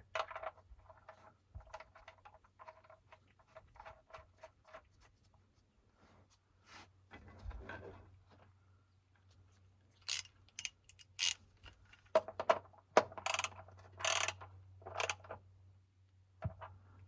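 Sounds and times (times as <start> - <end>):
wrench clinking and scraping: 10.0 - 11.8, 13.2 - 14.4.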